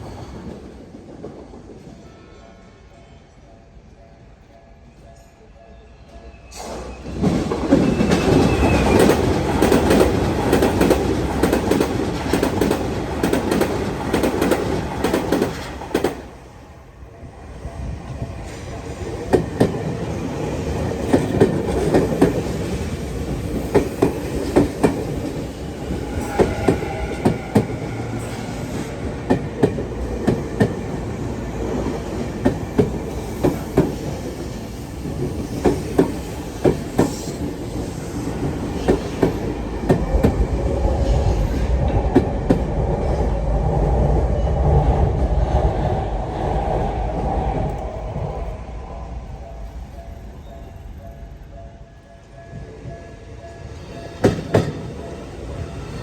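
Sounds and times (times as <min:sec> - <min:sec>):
deep train rumble: 0:06.6 - 0:56.0
train wheels clacking over rail joints: 0:07.2 - 0:16.3, 0:19.2 - 0:28.4.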